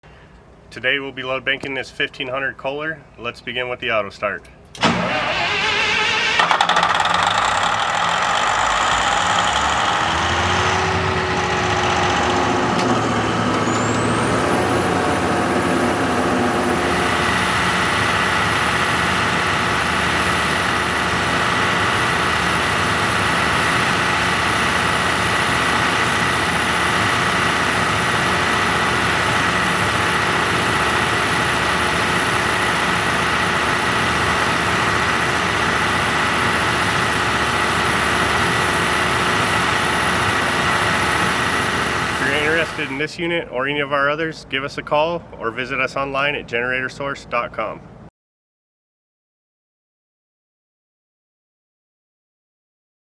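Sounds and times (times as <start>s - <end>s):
diesel generator engine running: 4.7s - 43.1s
high whine: 4.8s - 43.0s.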